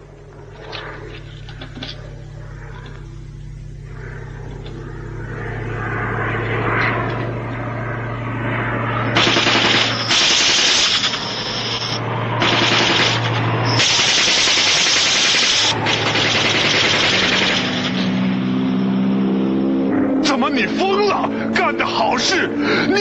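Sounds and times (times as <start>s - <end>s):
propeller aircraft engine droning: 0.0s - 23.0s
machine-gun fire: 9.1s - 18.2s.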